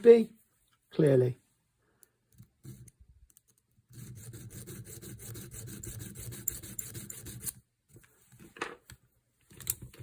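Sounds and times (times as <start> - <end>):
file rasping on steel screw: 3.9 - 7.6.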